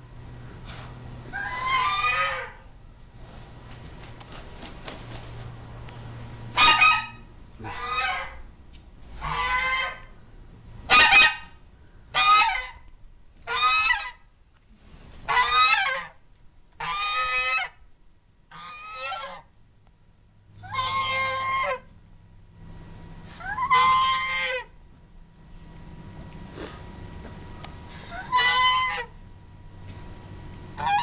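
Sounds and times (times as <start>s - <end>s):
goose honking: 1.3s - 2.7s, 6.5s - 8.4s, 9.2s - 10.1s, 10.9s - 11.5s, 12.1s - 12.8s, 13.4s - 14.2s, 15.2s - 16.2s, 16.8s - 17.8s, 18.5s - 19.5s, 20.6s - 21.9s, 23.3s - 24.7s, 28.0s - 29.2s, 30.7s - 31.0s.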